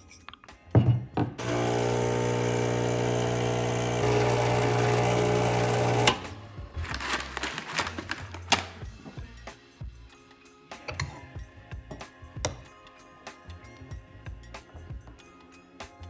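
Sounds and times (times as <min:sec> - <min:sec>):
motor switching off click: 0:01.4 - 0:06.4
small electric motor humming: 0:01.4 - 0:06.4.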